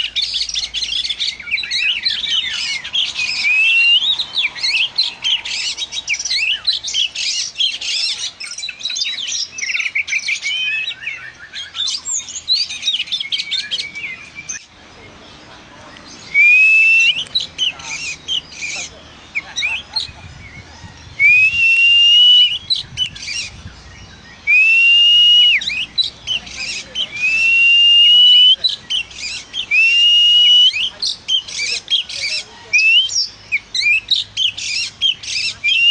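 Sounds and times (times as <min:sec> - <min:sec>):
bird singing chirps and trills: 0:00.0 - 0:35.9
long rising whistled notes: 0:02.6 - 0:05.8.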